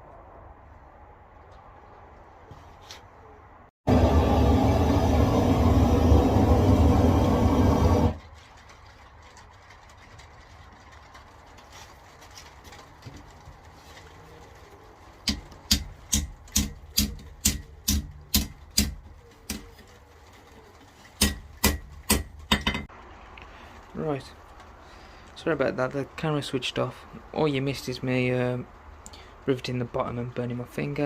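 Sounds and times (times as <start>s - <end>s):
loud steady roar: 3.9s - 8.2s.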